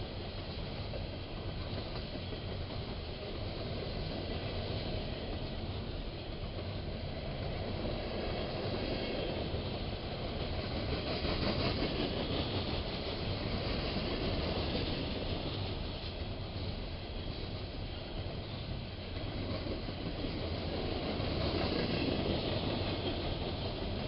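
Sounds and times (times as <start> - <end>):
train rolling on rails: 0.0 - 24.0.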